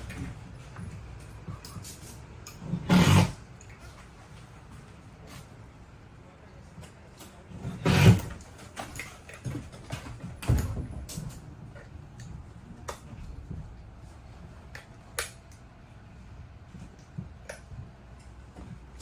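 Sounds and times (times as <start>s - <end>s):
knocks and clicks of drywall work: 7.5s - 11.4s.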